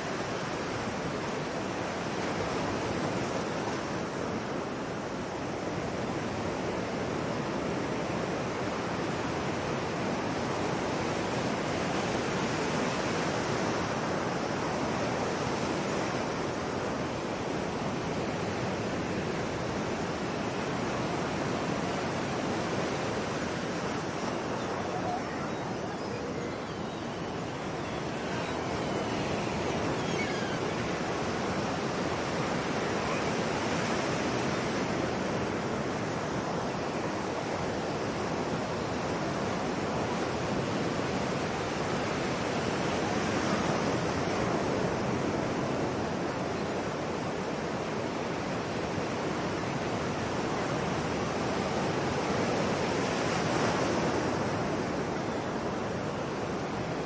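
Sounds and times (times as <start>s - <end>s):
waves breaking on shore: 0.0s - 57.0s.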